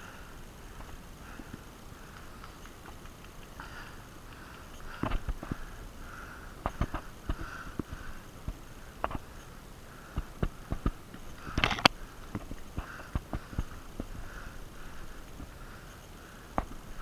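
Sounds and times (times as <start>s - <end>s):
heavy breathing through nose: 3.6s - 17.0s.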